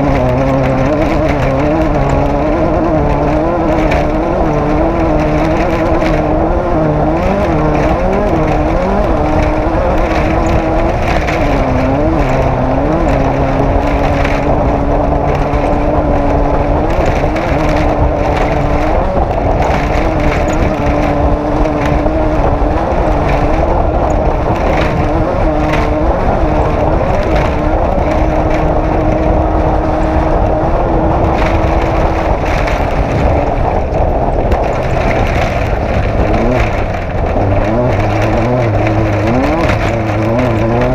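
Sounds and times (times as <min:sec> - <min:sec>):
off-road vehicle engine revving: 0:00.0 - 0:40.9
vehicle knocking and rattling: 0:00.0 - 0:40.9.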